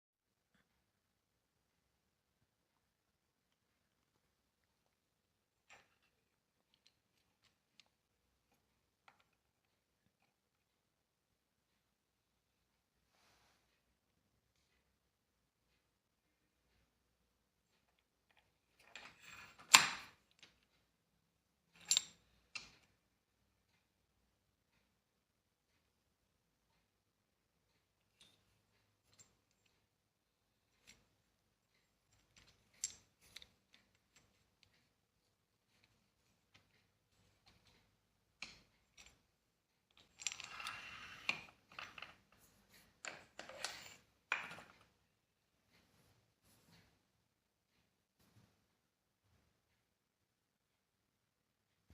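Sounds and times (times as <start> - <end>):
metallic clicks and clinks: 21.7 - 22.9, 30.7 - 34.9, 39.9 - 44.9.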